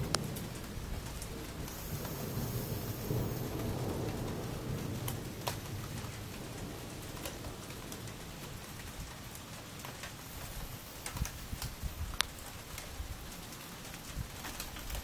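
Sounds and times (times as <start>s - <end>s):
rain hissing: 0.0s - 15.0s
raindrops ticking on surfaces: 0.0s - 15.0s.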